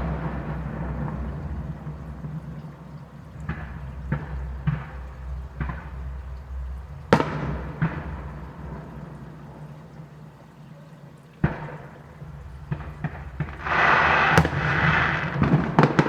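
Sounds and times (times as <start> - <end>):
fireworks bursting: 11.4 - 16.0.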